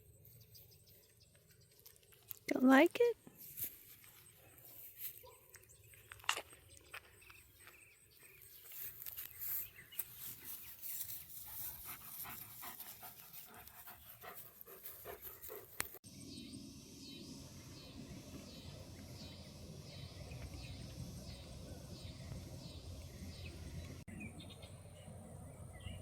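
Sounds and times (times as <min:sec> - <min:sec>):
dog panting: 0:11.3 - 0:16.0.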